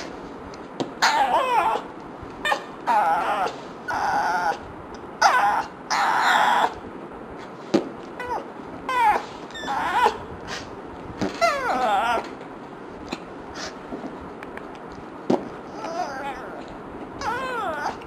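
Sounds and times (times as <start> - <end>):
dog whining: 1.0 - 6.8, 8.2 - 10.7, 11.3 - 12.4, 15.7 - 18.0.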